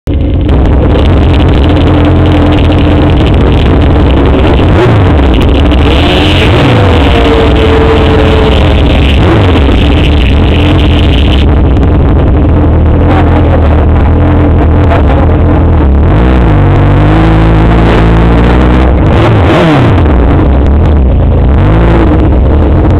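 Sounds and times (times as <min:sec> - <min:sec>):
atv engines revving: 0:00.1 - 0:22.9.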